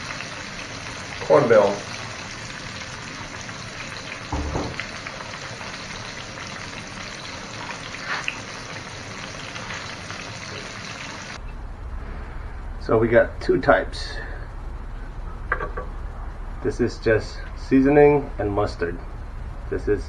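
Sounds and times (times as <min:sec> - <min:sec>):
fish frying in hot oil: 0:00.0 - 0:12.2.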